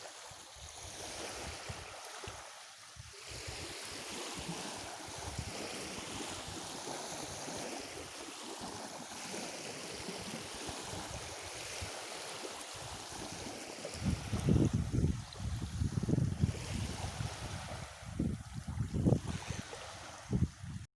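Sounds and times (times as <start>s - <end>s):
sea waves washing on shore: 0.0s - 20.9s
wind buffeting microphone: 14.0s - 20.9s.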